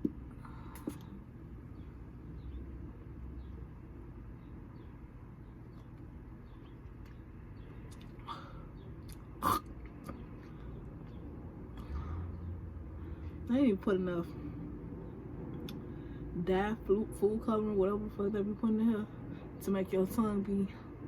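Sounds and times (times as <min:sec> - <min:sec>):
low background hum: 0:00.0 - 0:21.0
loud gulp: 0:09.4 - 0:10.2.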